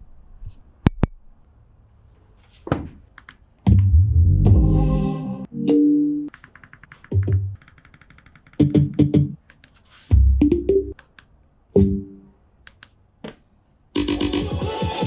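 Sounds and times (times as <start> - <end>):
deep bass hits: 3.7 - 5.0
fast clicking ticks: 6.3 - 9.8.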